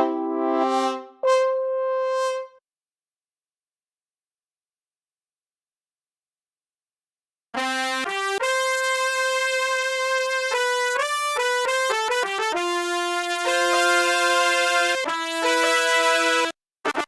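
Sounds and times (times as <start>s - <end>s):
sampled brass melody: 0.0s - 2.6s, 7.6s - 17.0s.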